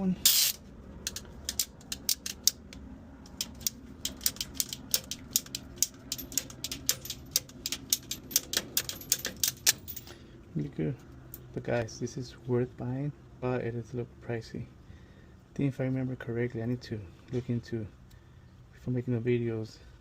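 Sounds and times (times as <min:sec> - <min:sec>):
cable cutter ratchet clicks: 0:00.3 - 0:09.8.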